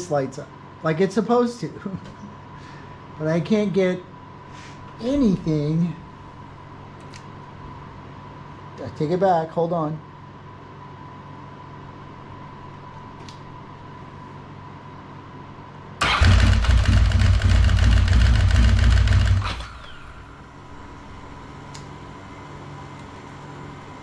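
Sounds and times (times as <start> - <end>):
motorcycle electric starter cranking: 16.0 - 20.5.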